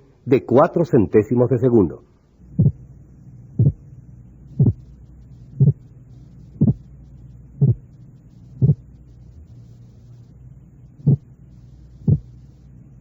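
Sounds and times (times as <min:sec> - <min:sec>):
faint steady hum: 0:00.0 - 0:13.0
split double heartbeat thumps: 0:02.5 - 0:03.9, 0:04.5 - 0:09.6, 0:11.0 - 0:11.3, 0:11.9 - 0:12.5.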